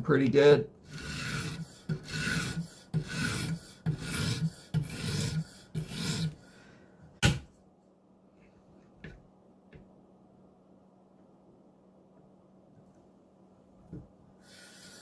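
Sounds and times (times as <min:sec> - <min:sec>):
sharpening stone rasping on knife: 0:00.9 - 0:06.4.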